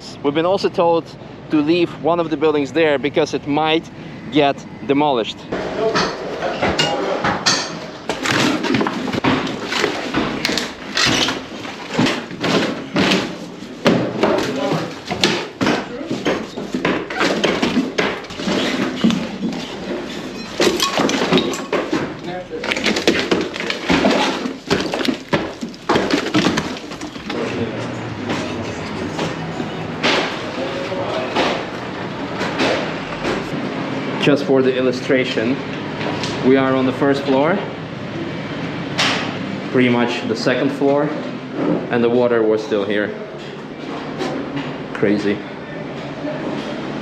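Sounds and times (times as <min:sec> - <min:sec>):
demolition knocks and thuds: 0:05.5 - 0:33.6
debris being dragged: 0:08.1 - 0:27.8.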